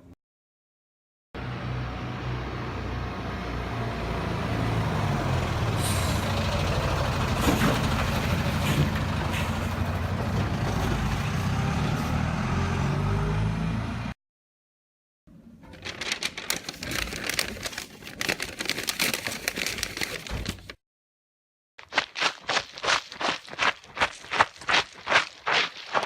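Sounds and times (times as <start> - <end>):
large engine running: 1.4 - 12.6.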